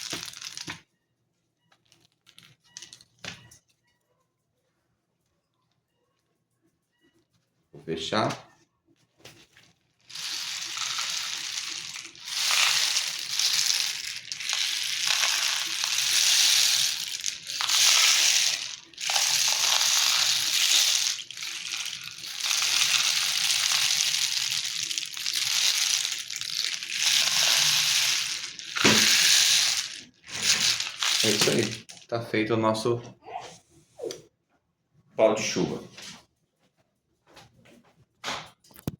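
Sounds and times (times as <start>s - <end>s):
rain stick rushing hiss: 10.1s - 32.0s.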